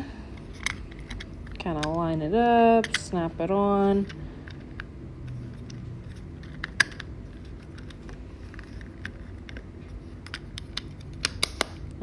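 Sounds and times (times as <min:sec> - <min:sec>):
sharp plastic click: 0:10.8 - 0:11.8.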